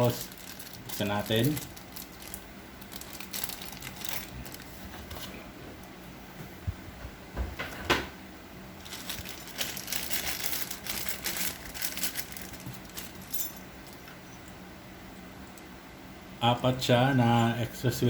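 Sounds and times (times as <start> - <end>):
plastic bag crinkling: 0.0 - 5.5, 8.8 - 14.2.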